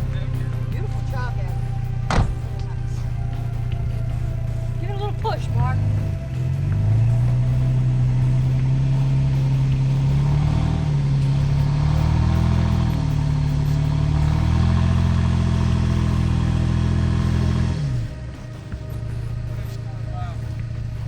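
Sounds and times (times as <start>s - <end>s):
vehicle engine under load: 0.0s - 21.0s.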